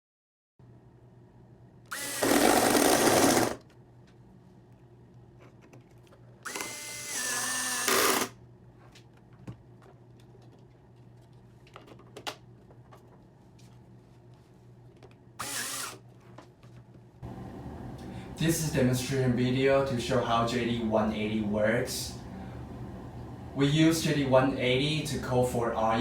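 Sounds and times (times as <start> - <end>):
electric drill whining: 1.9 - 3.6, 6.4 - 8.4, 15.4 - 16.0.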